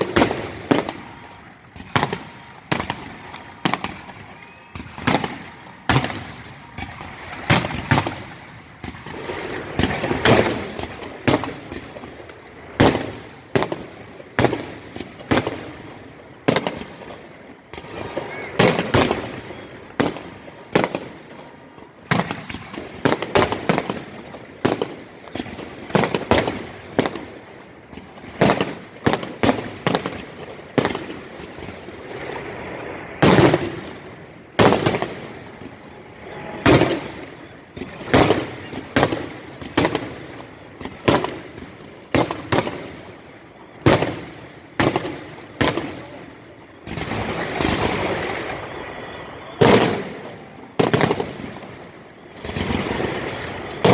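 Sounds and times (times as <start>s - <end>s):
firework booms: 0.0s - 53.9s
firework crackling: 0.0s - 53.9s.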